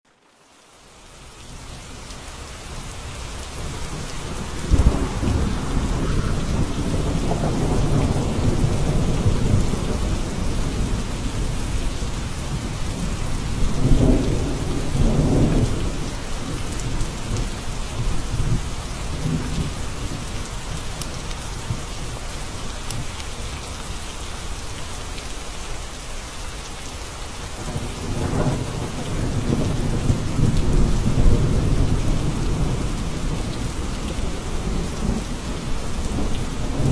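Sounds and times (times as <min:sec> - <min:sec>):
steady rain: 0:00.1 - 0:36.9
thunder rumbling: 0:03.4 - 0:20.3, 0:27.6 - 0:36.9.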